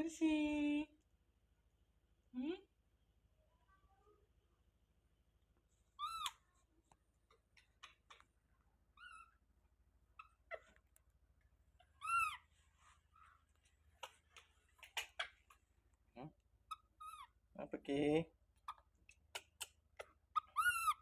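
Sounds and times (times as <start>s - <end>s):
baby monkey squeaky calls: 6.0s - 6.5s, 12.0s - 12.5s, 16.7s - 17.4s, 19.4s - 21.0s.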